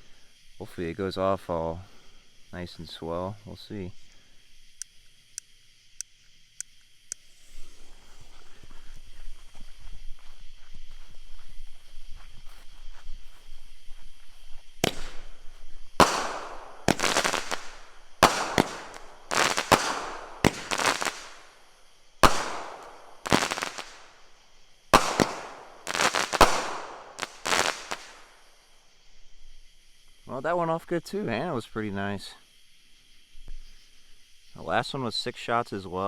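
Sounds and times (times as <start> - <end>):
firework launch thumps and bursts: 14.8 - 24.3, 24.9 - 28.4.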